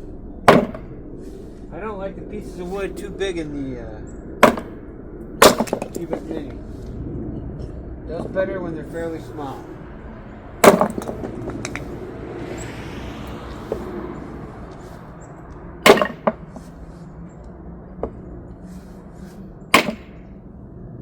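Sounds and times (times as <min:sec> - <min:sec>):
firewood chopping strikes: 0:00.5 - 0:00.9, 0:04.4 - 0:04.8, 0:05.4 - 0:06.2, 0:10.6 - 0:11.2, 0:15.8 - 0:16.7, 0:19.7 - 0:20.2.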